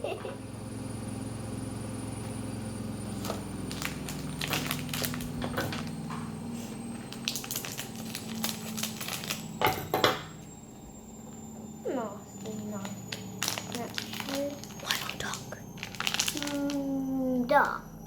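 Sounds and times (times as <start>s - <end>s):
low hum: 0.0s - 18.0s
plastic packaging crinkling: 3.2s - 6.0s, 7.1s - 9.6s, 12.4s - 16.9s.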